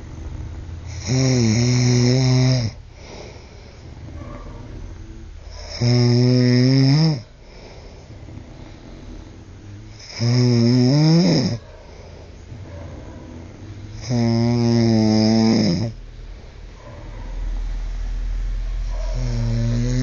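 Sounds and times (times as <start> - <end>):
man snoring loudly: 0.8 - 3.2, 5.0 - 7.3, 8.2 - 11.6, 13.4 - 16.0, 19.1 - 20.0
quiet breathing: 2.3 - 6.4, 7.2 - 20.0.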